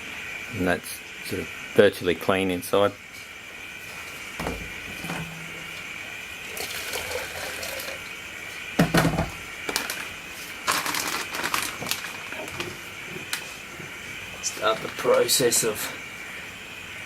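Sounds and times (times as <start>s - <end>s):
water pouring and splashing: 4.0s - 8.1s.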